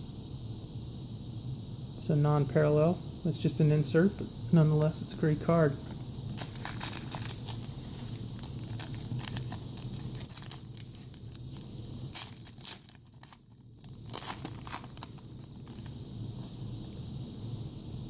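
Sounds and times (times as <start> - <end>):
foil wrapper crinkling: 6.2 - 16.9
foil wrapper ripping: 6.3 - 16.6.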